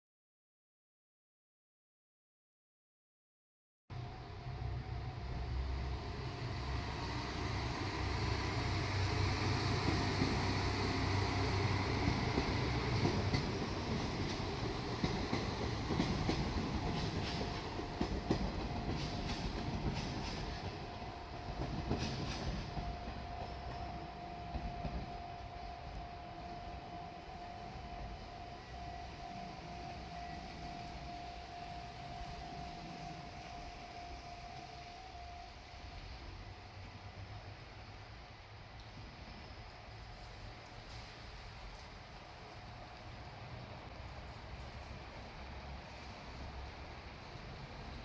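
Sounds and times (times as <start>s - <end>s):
diesel railcar engine rumbling: 3.9s - 48.0s
wheels clicking over rail joints: 7.6s - 35.1s.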